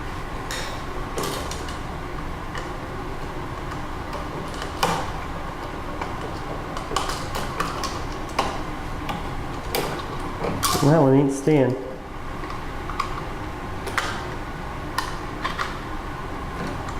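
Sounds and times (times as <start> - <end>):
steady background hum: 0.0 - 16.9.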